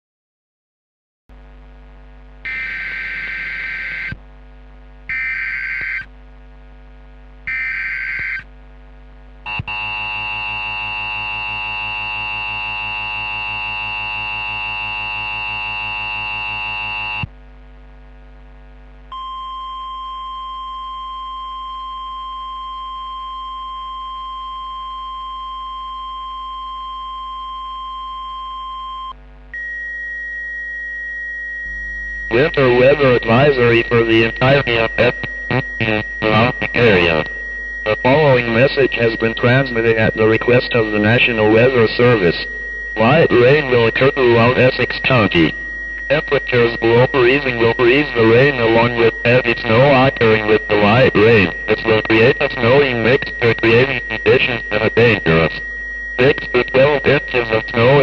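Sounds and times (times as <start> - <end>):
steady single-pitch tone: 2.4 - 4.2, 9.5 - 17.3, 19.1 - 58.0
low hum: 8.5 - 58.0
higher tone: 9.5 - 17.3, 29.6 - 58.0
buzzy alert tone: 32.3 - 55.5
digital header data bursts: 32.3 - 58.0.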